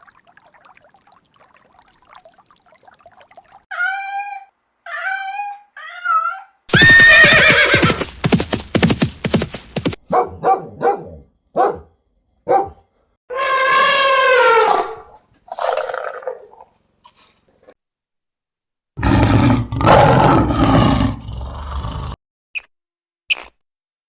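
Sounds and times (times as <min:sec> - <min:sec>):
dog barking: 0:10.0 - 0:12.9.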